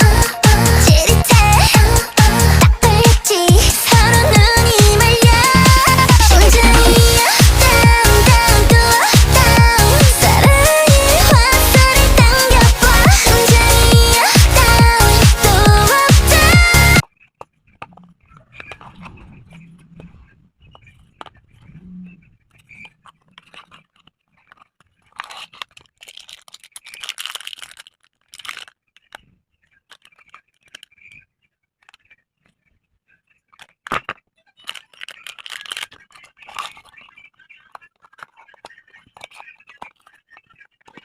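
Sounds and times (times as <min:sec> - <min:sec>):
packaging crinkling and rustling: 0:23.4 - 0:29.2, 0:33.6 - 0:37.1
packaging tearing: 0:25.0 - 0:29.1, 0:34.6 - 0:36.9.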